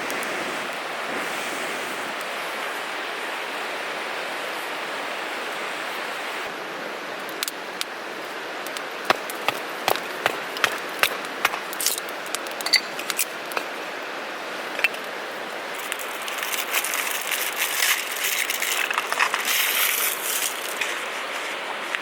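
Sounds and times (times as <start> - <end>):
rustling and crinkling: 14.6 - 22.0.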